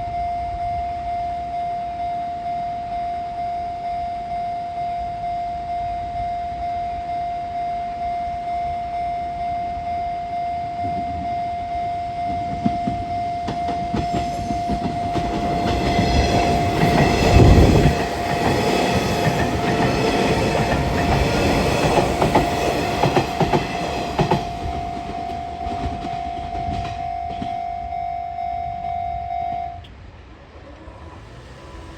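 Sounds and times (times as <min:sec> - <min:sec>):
level crossing warning bell: 0:00.0 - 0:29.9
train wheels clattering over rail joints: 0:12.5 - 0:27.6.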